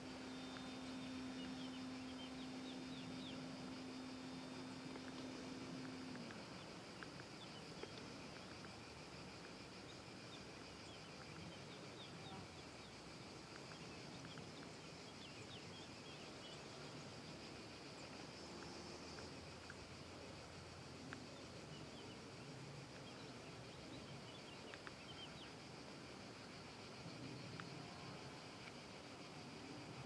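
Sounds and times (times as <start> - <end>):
low steady hum: 0.0 - 8.8
high insect buzz: 0.0 - 30.0.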